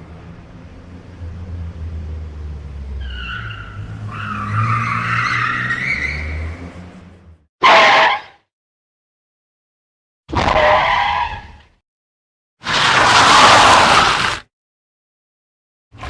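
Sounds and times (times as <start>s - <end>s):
tyre screech: 3.0s - 6.9s, 7.6s - 8.4s, 10.4s - 11.6s
car engine running: 6.4s - 7.5s.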